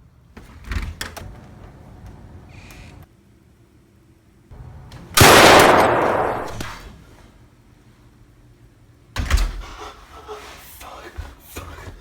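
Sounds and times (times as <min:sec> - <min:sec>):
loud gunshot: 0:05.2 - 0:06.8.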